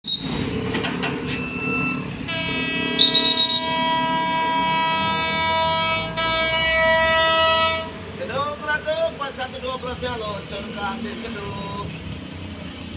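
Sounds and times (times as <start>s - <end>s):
train rumbling past: 0.1s - 11.6s
locomotive horn blast: 1.3s - 8.7s.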